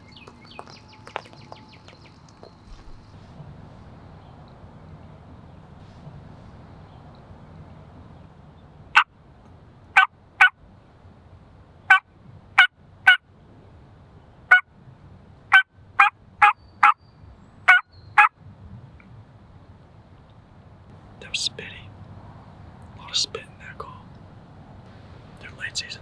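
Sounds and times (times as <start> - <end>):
turkey call yelps: 10.0 - 10.5, 12.6 - 13.2, 15.5 - 17.0, 17.7 - 18.3.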